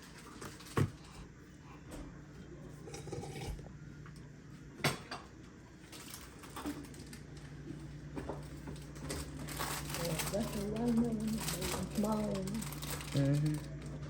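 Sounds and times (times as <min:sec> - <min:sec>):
groceries knocking and clattering: 0:00.0 - 0:01.2, 0:04.8 - 0:14.0
low steady hum: 0:00.0 - 0:14.0.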